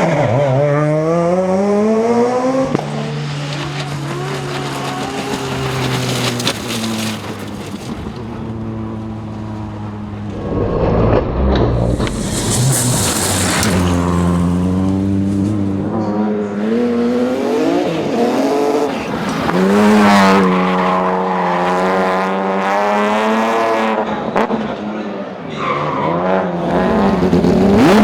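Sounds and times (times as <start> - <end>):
rally car engine revving: 0.0 - 28.0
tyres hissing on gravel: 3.0 - 8.2, 12.0 - 15.0, 26.6 - 28.0.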